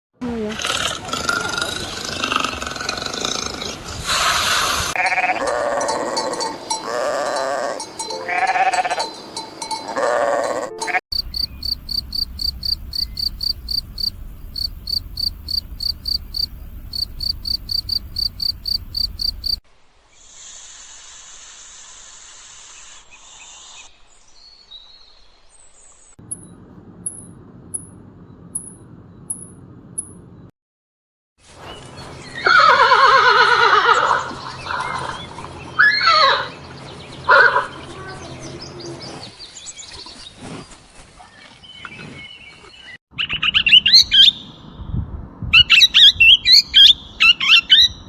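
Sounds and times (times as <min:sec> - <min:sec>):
animal hissing: 0:00.4 - 0:05.2, 0:20.2 - 0:23.9
bleating animal cries: 0:04.9 - 0:09.1, 0:09.9 - 0:11.0, 0:32.4 - 0:35.1, 0:35.8 - 0:36.6
high animal chirps: 0:09.9 - 0:19.6.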